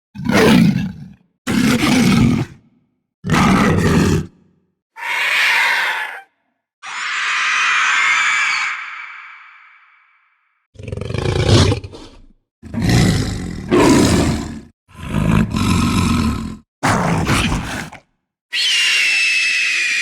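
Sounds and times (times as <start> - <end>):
deep rough creature roars: 3.2 - 4.4, 5.0 - 10.1, 10.8 - 18.0
high shrieking cry: 5.0 - 10.4, 18.5 - 20.0.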